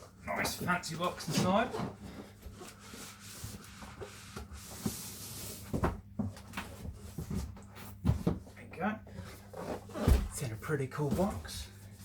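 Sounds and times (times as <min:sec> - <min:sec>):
cardboard scraping against cardboard: 0:09.2 - 0:10.4.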